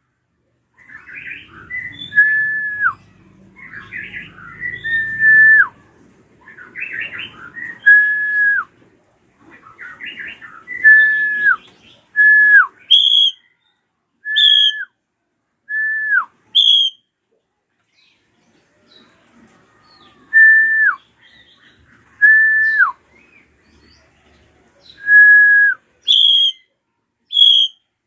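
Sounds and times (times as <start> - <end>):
bird whistles falling in pitch: 12.9 - 13.4, 14.3 - 14.8, 16.6 - 17.0, 26.1 - 26.6, 27.3 - 27.8.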